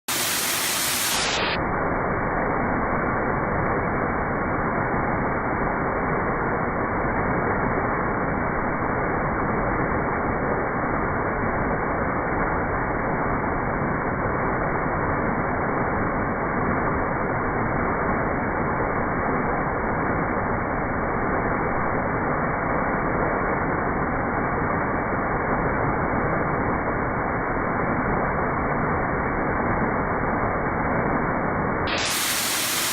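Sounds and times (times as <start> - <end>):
waterfall rushing: 0.0 - 1.6, 31.9 - 32.9.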